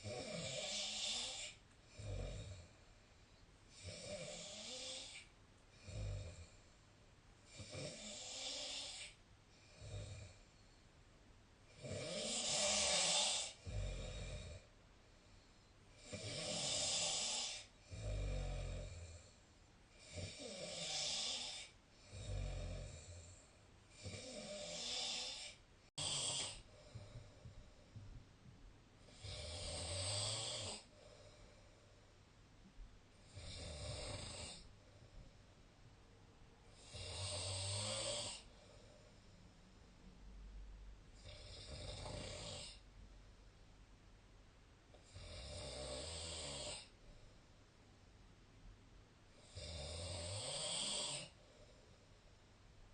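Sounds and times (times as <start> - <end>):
person snoring: 0.0 - 2.8, 3.7 - 6.6, 7.5 - 10.4, 11.7 - 14.7, 15.9 - 27.6, 29.0 - 31.5, 33.2 - 34.7, 36.7 - 38.8, 41.2 - 42.8, 45.0 - 46.9, 49.4 - 51.4
quiet breathing: 0.0 - 43.6, 44.9 - 47.8, 49.2 - 52.9.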